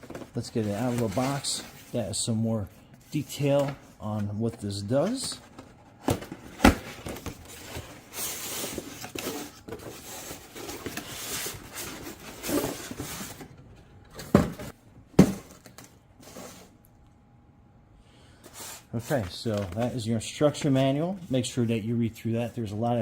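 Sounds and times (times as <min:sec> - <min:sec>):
packaging rustling: 0:00.0 - 0:02.0.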